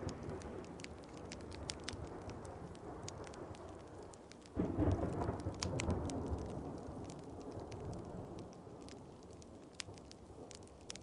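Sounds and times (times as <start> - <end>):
thunder rumble: 0.0 - 11.0
wood fire crackling and popping: 0.0 - 11.0.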